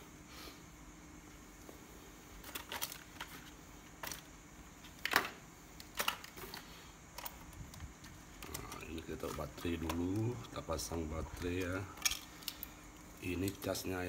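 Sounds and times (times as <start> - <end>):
toy packaging clicks and rustles: 2.4 - 4.3, 4.9 - 13.8.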